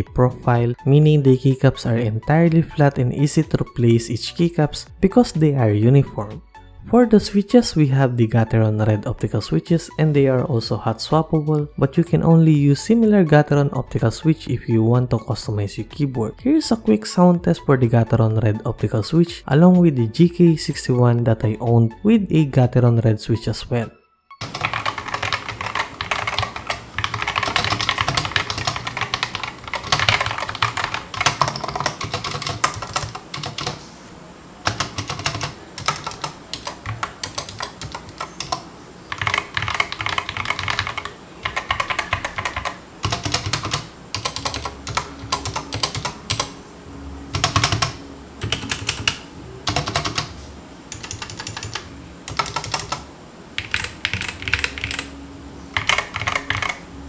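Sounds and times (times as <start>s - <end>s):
mechanical keyboard typing: 24.4s - 33.9s, 34.6s - 46.6s, 47.3s - 53.0s, 53.6s - 55.1s, 55.8s - 56.8s.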